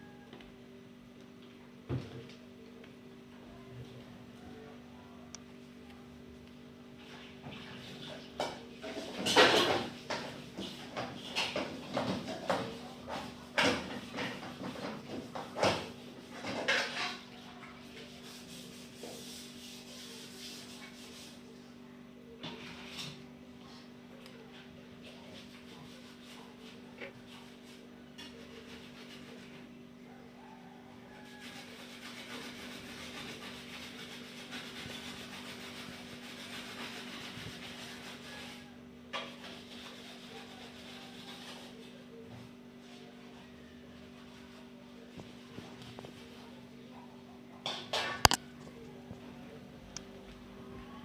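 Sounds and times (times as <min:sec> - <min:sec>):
scrubbing a kitchen surface: 0:07.0 - 0:21.8, 0:25.0 - 0:29.9, 0:31.1 - 0:47.2.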